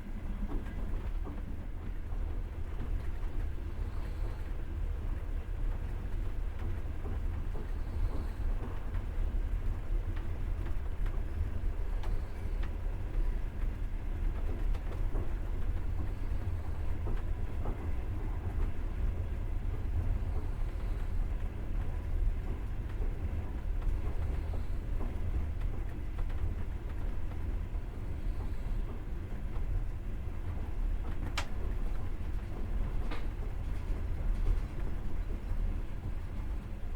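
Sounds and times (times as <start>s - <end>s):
train wheels rumbling on track: 0.0s - 36.9s
clicks of train wheels: 31.0s - 36.6s.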